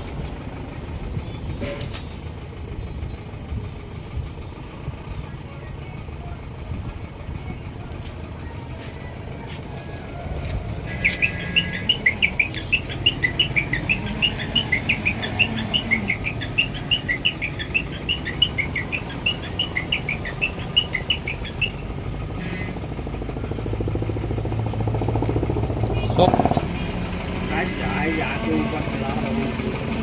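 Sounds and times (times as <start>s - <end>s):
bird chirping rapidly: 10.8s - 22.9s, 26.0s - 28.5s.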